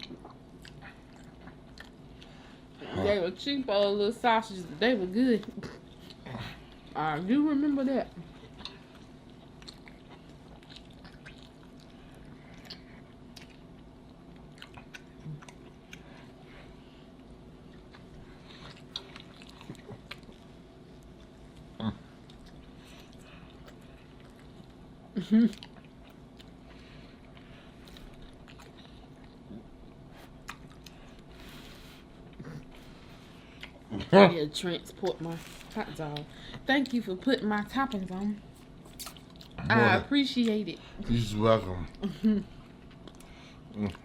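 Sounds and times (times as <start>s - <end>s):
person chewing food: 0.0s - 2.7s, 5.4s - 7.0s, 8.2s - 34.2s, 38.0s - 40.6s, 41.9s - 44.0s.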